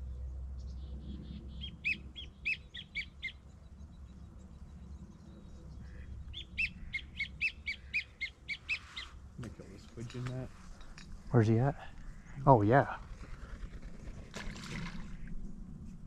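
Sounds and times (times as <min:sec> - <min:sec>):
wigeon whistling: 0:01.6 - 0:03.4, 0:06.4 - 0:09.1.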